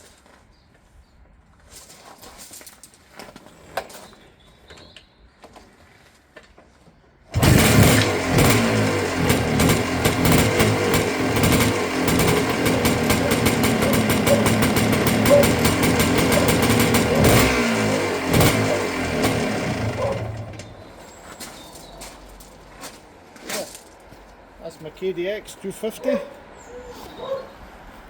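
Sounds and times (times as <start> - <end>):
two-stroke motorcycle engine revving: 7.3 - 21.0.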